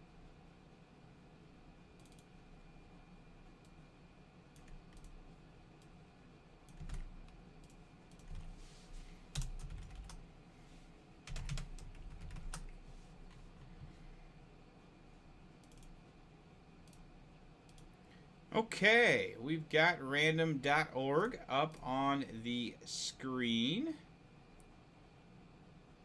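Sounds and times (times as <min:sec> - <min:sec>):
computer keyboard typing: 0:02.0 - 0:02.3, 0:04.6 - 0:05.2, 0:06.7 - 0:08.5, 0:09.3 - 0:10.2, 0:11.2 - 0:12.7, 0:15.6 - 0:15.9.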